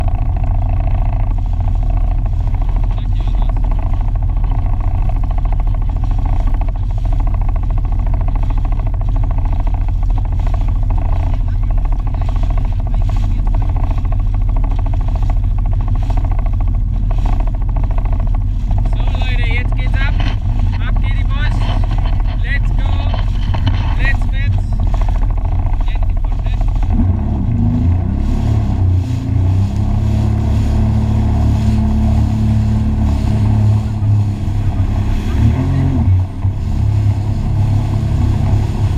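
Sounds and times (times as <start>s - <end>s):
jet ski engine running: 0.0s - 38.9s.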